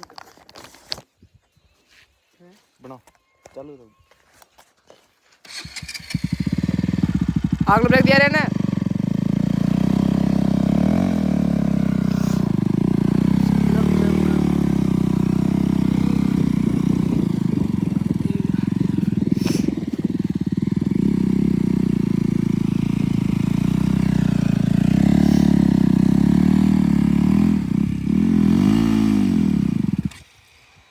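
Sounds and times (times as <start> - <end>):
motorcycle engine running: 5.5 - 30.2.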